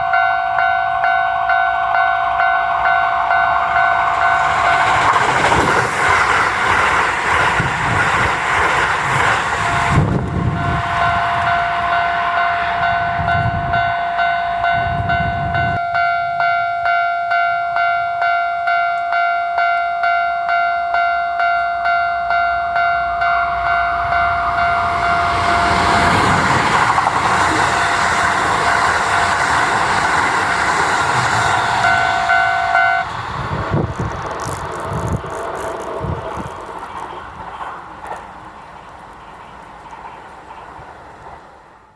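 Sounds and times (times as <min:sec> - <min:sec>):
railway crossing bell ringing: 0:00.0 - 0:06.9, 0:09.1 - 0:33.2
train rushing past: 0:00.0 - 0:16.6, 0:20.5 - 0:41.9
train wheels thumping on rail joints: 0:03.3 - 0:12.0, 0:24.0 - 0:41.5.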